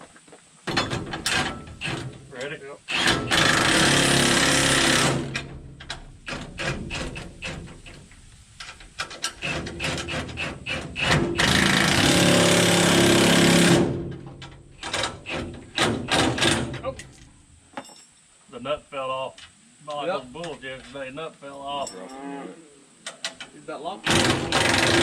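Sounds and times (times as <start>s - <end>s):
impact wrench rattling: 24.1s - 25.0s.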